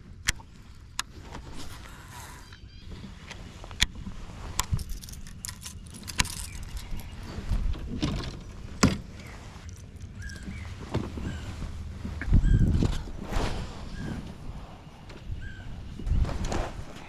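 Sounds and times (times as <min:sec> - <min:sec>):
light metallic jangling: 0:04.6 - 0:07.4
fishing gear clicking and knocking: 0:04.6 - 0:11.1.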